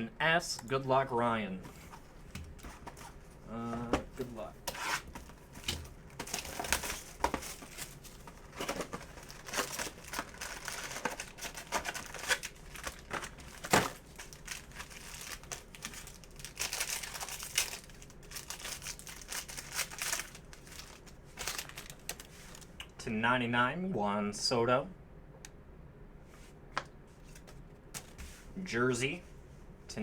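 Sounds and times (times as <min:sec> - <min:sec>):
plastic wrappers crinkling and tearing: 0:04.2 - 0:22.8.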